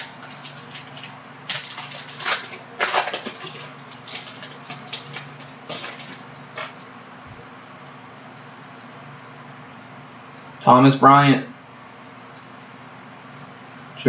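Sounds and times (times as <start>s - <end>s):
card wrapper crinkling and tearing: 0.0s - 6.2s.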